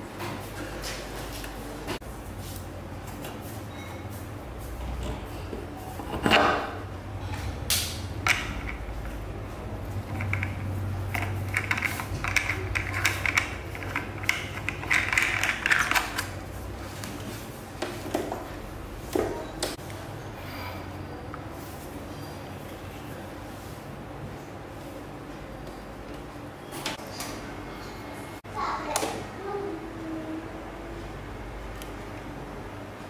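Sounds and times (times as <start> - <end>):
small hard parts clicking: 10.0 - 16.3.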